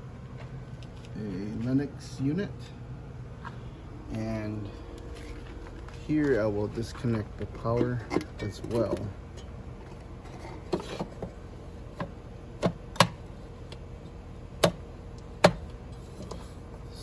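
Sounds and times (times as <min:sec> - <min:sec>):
sharp clicks and knocks on metal box: 0:12.0 - 0:13.2, 0:14.6 - 0:14.8.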